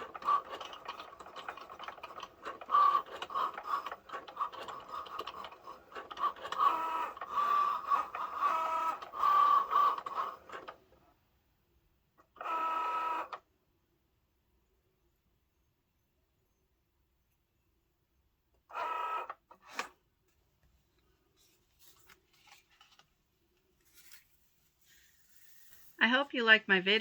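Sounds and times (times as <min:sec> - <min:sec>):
cutting machine motors whirring: 0:00.0 - 0:10.8, 0:12.4 - 0:13.4.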